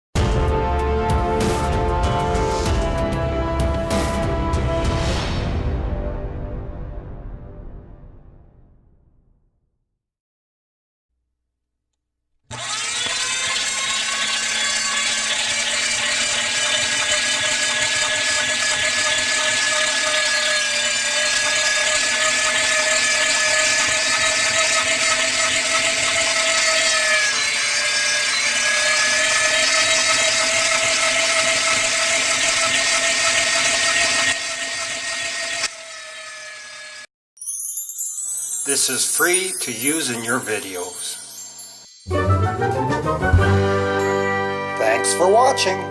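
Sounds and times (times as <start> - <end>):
electric meat grinder motor whining: 12.5 - 37.1.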